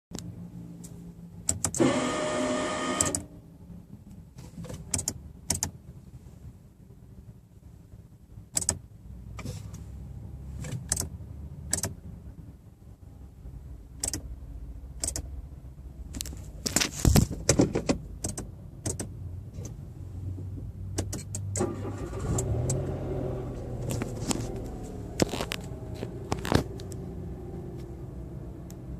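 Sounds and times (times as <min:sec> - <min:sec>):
sharp clicks: 0:04.8 - 0:05.8, 0:08.5 - 0:08.8, 0:11.7 - 0:12.0, 0:14.0 - 0:14.3, 0:15.0 - 0:15.3, 0:18.2 - 0:19.1
car engine running: 0:19.1 - 0:28.9.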